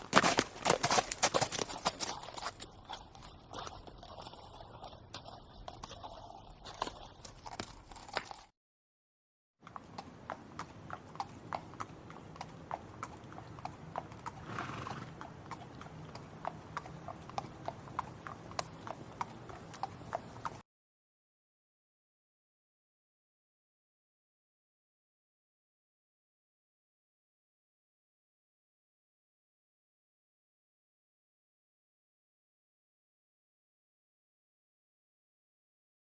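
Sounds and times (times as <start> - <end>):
horse hooves clip-clopping: 0.0 - 8.5, 9.6 - 20.6.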